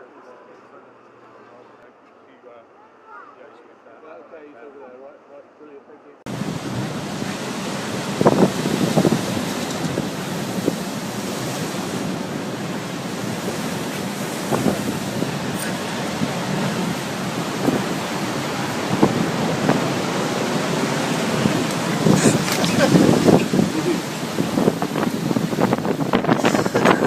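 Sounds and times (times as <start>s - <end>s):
gust thumps: 6.3s - 27.0s
wind rushing across microphone: 6.3s - 27.0s.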